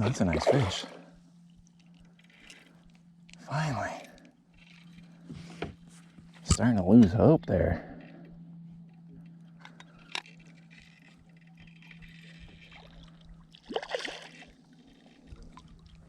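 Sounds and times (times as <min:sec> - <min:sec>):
water sloshing and trickling: 0:00.0 - 0:06.7, 0:10.3 - 0:16.0.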